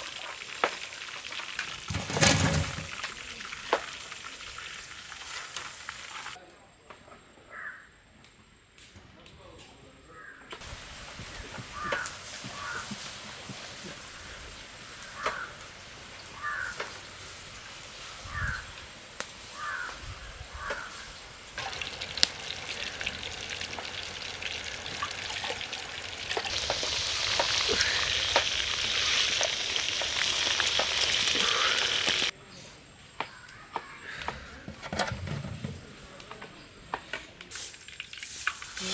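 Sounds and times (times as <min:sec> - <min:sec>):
hot oil sizzling in a pan: 0:00.0 - 0:06.4, 0:10.6 - 0:19.9, 0:20.6 - 0:32.3, 0:37.5 - 0:38.9
crow cawing: 0:07.5 - 0:08.0, 0:11.7 - 0:12.9, 0:15.0 - 0:15.6, 0:16.4 - 0:17.0, 0:18.3 - 0:18.7, 0:19.5 - 0:21.1, 0:26.8 - 0:32.3.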